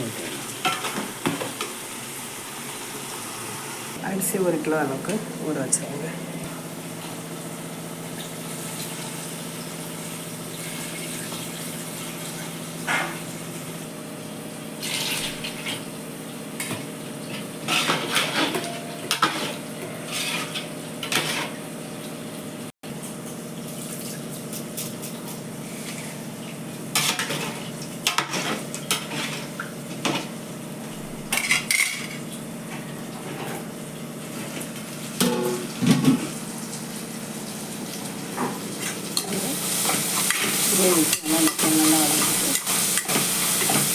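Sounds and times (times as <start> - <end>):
steady background hum: 0.0 - 8.2
metal pots and utensils clattering: 0.2 - 1.8, 16.6 - 21.6, 26.9 - 30.4, 31.0 - 33.7, 34.4 - 36.4, 38.3 - 43.9.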